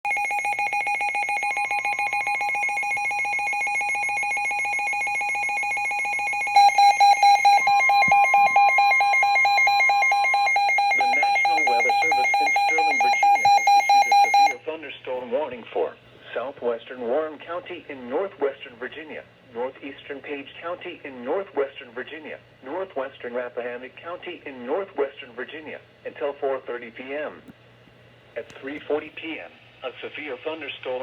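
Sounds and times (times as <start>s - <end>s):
pulsing electronic alarm: 0.1s - 14.6s
broadcast voice: 10.8s - 27.5s, 28.4s - 31.0s.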